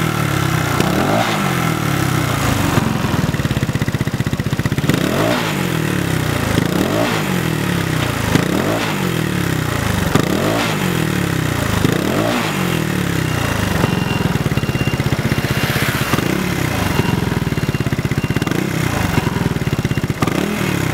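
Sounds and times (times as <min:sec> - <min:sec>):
motorbike engine revving and idling: 0:00.0 - 0:20.9.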